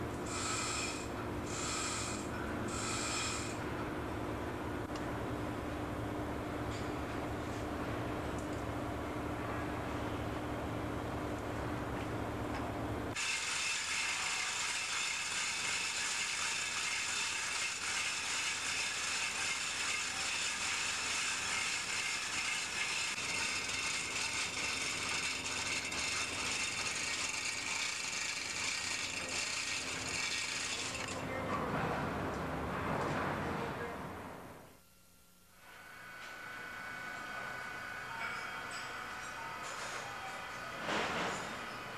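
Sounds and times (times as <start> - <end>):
high-pitched mechanical noise: 0.0 - 3.9, 13.1 - 31.2.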